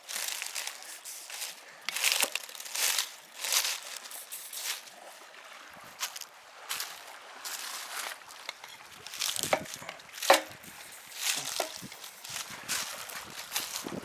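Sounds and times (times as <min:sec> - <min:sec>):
aerosol can spraying: 0:04.1 - 0:04.7.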